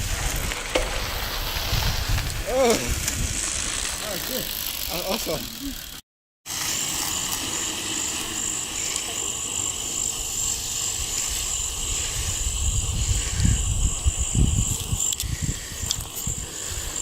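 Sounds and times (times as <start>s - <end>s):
insects chirping: 6.5s - 17.0s.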